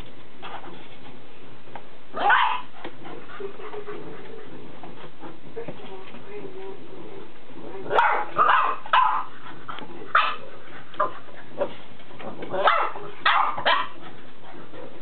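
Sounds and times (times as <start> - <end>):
dog barking: 2.2 - 2.7, 7.9 - 9.3, 10.1 - 10.4, 12.6 - 14.0.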